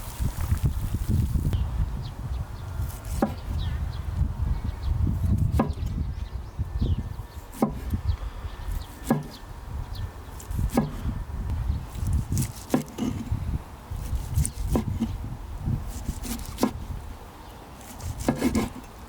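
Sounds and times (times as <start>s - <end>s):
knife chopping on wooden board: 3.0s - 3.4s, 5.4s - 5.9s, 7.5s - 8.0s, 8.9s - 9.4s, 10.4s - 11.0s, 12.4s - 13.3s, 14.0s - 15.2s, 15.9s - 16.8s, 17.8s - 18.8s.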